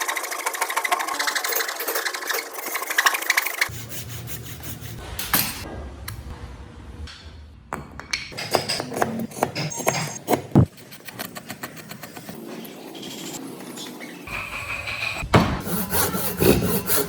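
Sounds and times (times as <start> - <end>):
woodworking machine chattering: 0.0 - 3.8.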